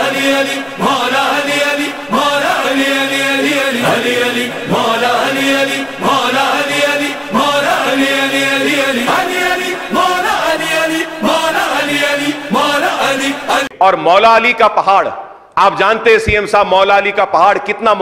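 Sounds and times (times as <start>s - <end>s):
devotional chanting: 0.0s - 14.4s.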